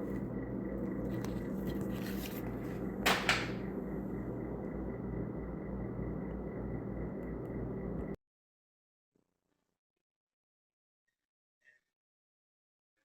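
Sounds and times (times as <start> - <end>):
faint high whine: 0.0 - 8.2
low room hum: 0.0 - 8.2.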